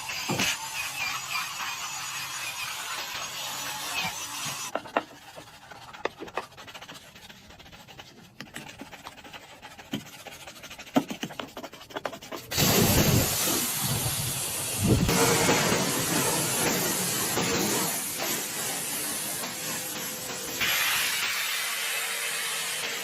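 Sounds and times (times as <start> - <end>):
hissing cleaning jet: 12.5 - 23.0.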